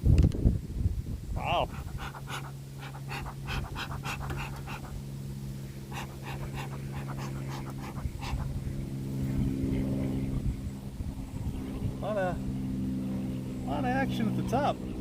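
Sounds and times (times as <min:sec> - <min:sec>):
steady low hum: 0:00.6 - 0:15.0
person breathing heavily: 0:01.5 - 0:05.0, 0:05.8 - 0:08.6.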